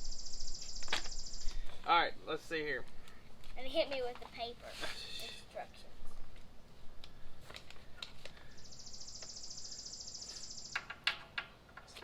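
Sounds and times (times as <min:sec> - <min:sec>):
clicks of parts and papers handled: 0:07.0 - 0:08.5.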